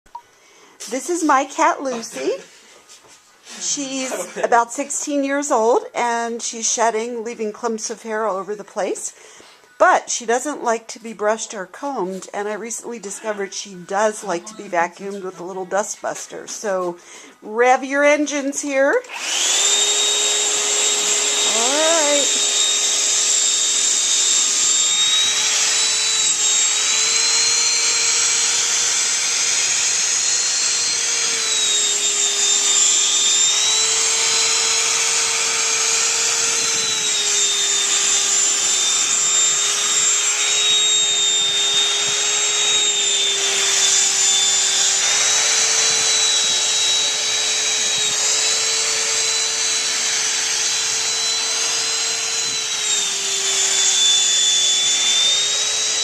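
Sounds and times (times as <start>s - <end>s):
hand vacuum running: 1.6s - 2.5s, 19.0s - 56.0s.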